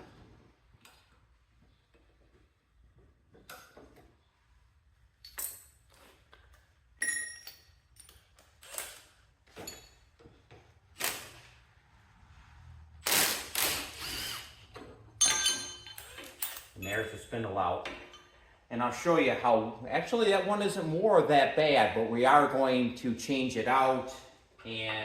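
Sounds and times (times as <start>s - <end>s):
hand tools clinking on metal: 15.2s - 17.4s.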